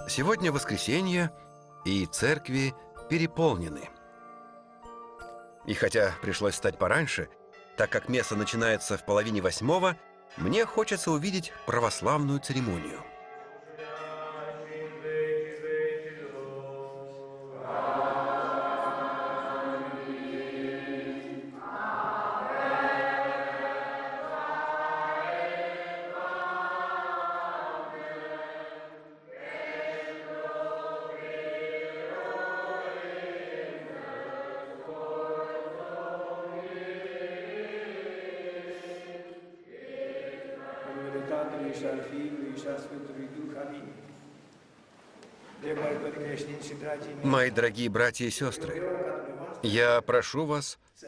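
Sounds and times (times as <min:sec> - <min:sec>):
voices chanting long held notes: 0:12.6 - 0:44.0.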